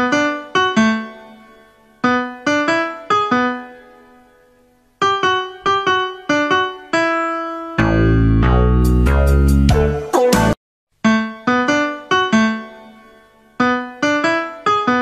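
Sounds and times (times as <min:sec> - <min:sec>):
keyboard playing single notes: 0:05.0 - 0:12.9.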